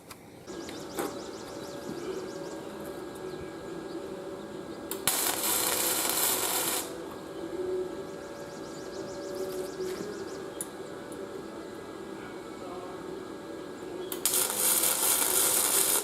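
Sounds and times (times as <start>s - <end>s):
faint steady hum: 0.0s - 16.0s
reciprocating saw cutting metal: 4.1s - 8.1s, 14.1s - 16.0s.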